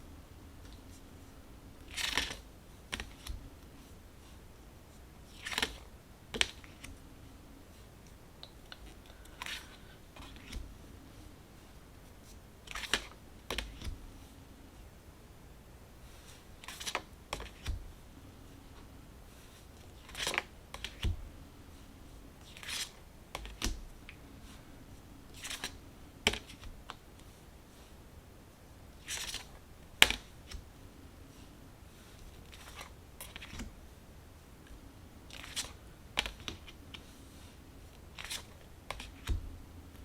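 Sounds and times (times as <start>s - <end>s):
cards swishing and tapping: 1.8s - 3.4s, 5.3s - 7.0s, 8.7s - 10.7s, 12.3s - 14.0s, 19.6s - 21.2s, 22.4s - 24.2s, 25.3s - 27.0s, 35.3s - 37.1s, 37.9s - 39.5s.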